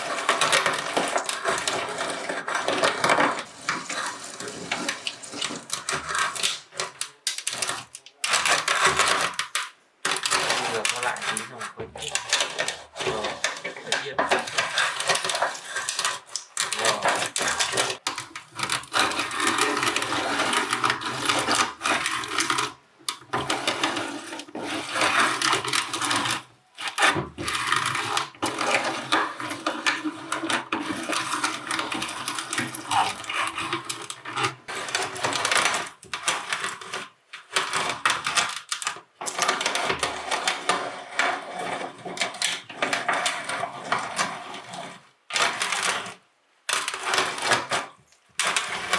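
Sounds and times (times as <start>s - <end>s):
meat grinder grinding cherries: 10.1s - 36.8s.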